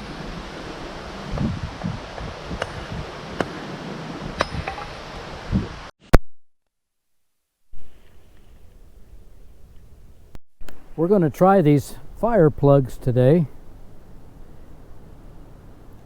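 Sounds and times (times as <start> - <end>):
wind on microphone: 0.0 - 5.9
quiet outdoor background: 0.0 - 16.0
sharp pops and clicks: 10.6 - 10.9.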